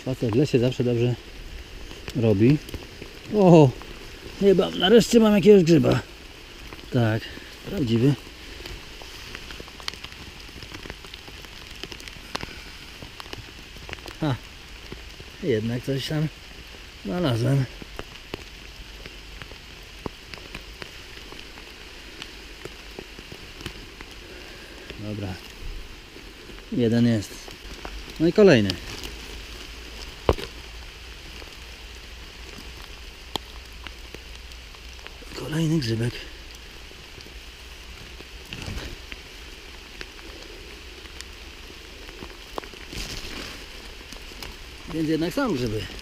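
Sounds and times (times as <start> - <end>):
raindrops ticking sharply: 0.0 - 46.0
steady rain in woodland: 0.0 - 46.0.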